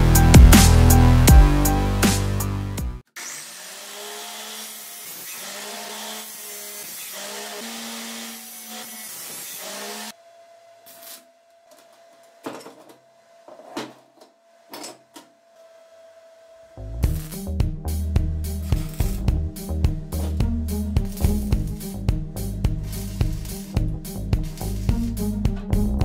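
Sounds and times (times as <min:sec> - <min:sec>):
power tool working on metal: 0:03.1 - 0:13.6, 0:18.5 - 0:19.3, 0:22.8 - 0:23.8.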